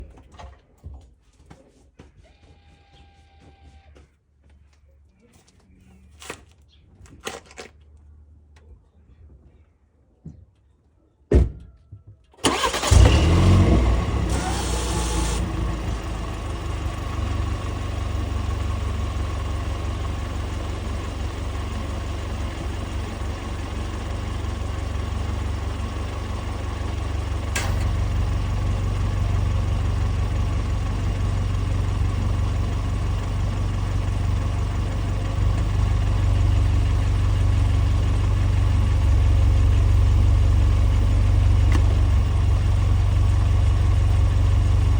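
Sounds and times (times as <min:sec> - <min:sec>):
car engine starting and idling: 0:12.4 - 0:44.9.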